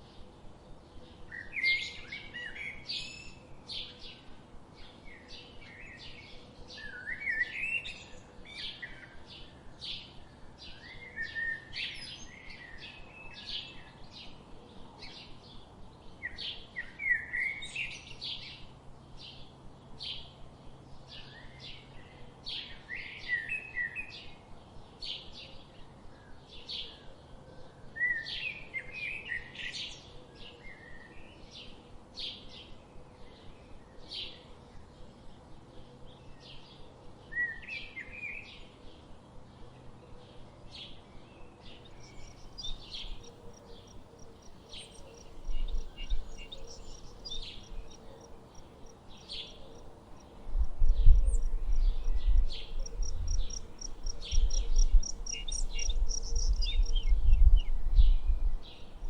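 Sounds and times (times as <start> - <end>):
songbirds chirping and trilling: 0.0 - 59.0.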